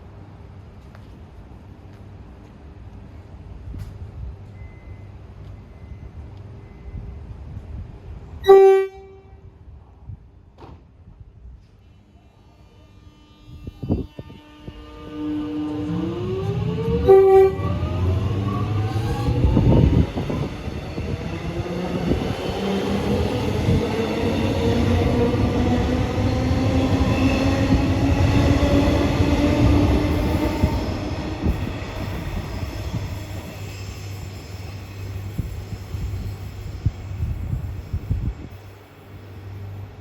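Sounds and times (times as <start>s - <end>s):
train horn blast: 8.4s - 9.5s, 11.9s - 19.8s
wheels rumbling on rails: 13.0s - 40.0s.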